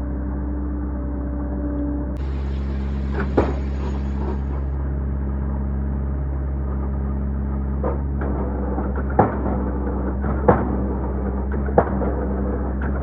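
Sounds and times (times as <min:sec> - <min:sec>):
diesel engine running: 0:00.0 - 0:11.5
sharp knock: 0:03.1 - 0:04.6.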